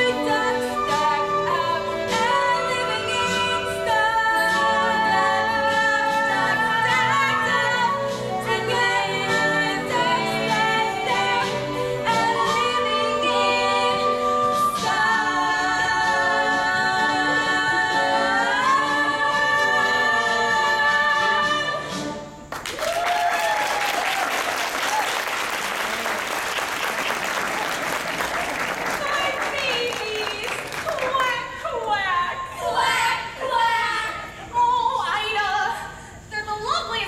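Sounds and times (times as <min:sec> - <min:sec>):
audience applause: 0:22.5 - 0:31.4.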